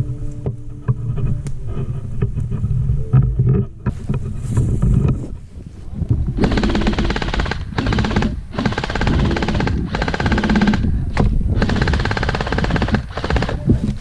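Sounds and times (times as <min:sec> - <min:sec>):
airsoft gun full-auto bursts: 0:06.4 - 0:13.6.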